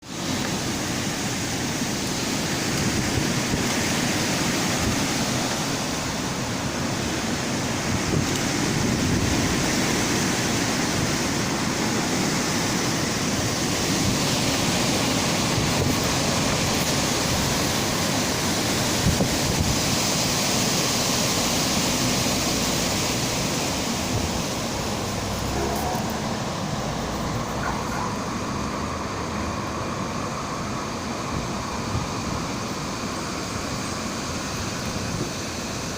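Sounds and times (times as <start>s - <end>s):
wind buffeting microphone: 0.8s - 29.2s
strong wind rushing: 22.0s - 29.0s.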